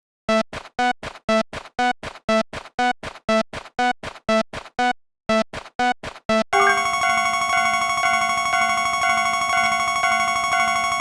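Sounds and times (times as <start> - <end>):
level crossing bell clanging: 6.6 - 11.0.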